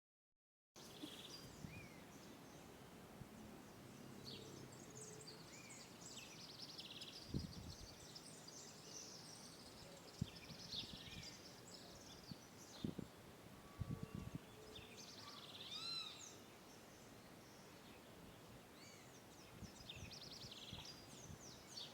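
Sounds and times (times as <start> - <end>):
birds chirping and twittering: 0.8 - 13.1, 13.8 - 21.9.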